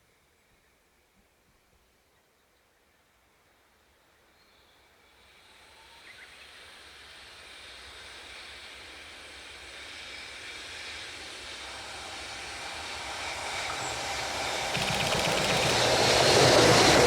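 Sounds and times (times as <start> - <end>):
electric locomotive rumbling: 14.1 - 17.0.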